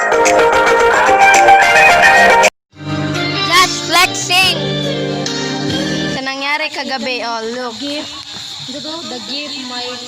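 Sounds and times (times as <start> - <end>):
music playing: 0.0 - 7.3.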